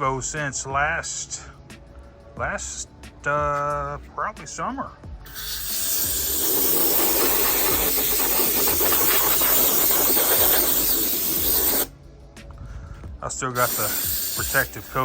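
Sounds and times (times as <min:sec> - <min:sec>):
compressed air blow gun hissing: 0:05.3 - 0:11.9, 0:13.5 - 0:15.0.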